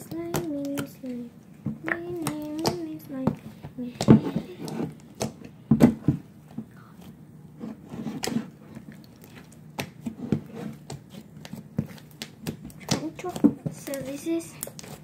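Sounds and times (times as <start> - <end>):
slime squelching in hands: 0.0 - 15.0.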